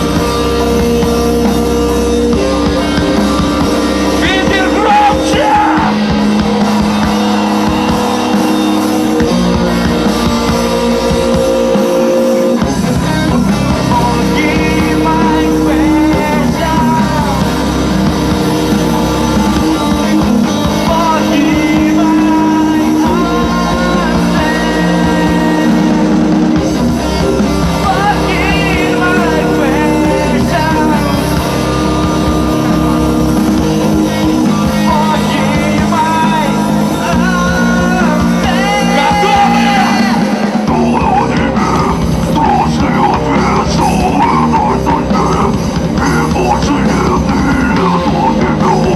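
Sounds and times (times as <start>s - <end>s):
person singing: 0.0s - 48.9s
rock band playing live: 0.0s - 48.9s.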